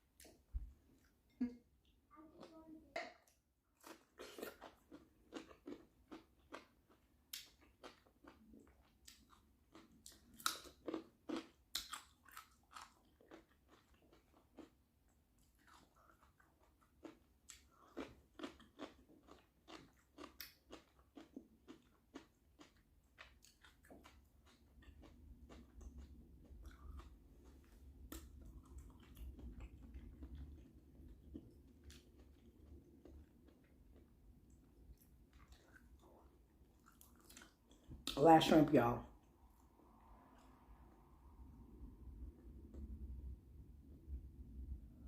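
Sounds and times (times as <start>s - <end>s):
wet chewing and smacking: 3.8s - 38.2s.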